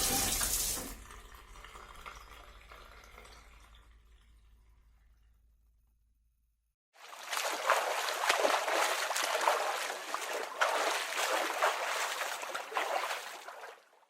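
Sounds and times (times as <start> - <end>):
water splashing and sloshing: 0.0 - 5.7, 7.0 - 14.0.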